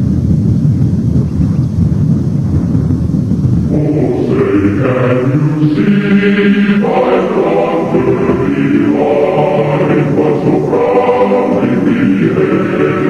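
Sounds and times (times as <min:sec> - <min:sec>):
choir singing sustained chords: 0:03.7 - 0:13.0.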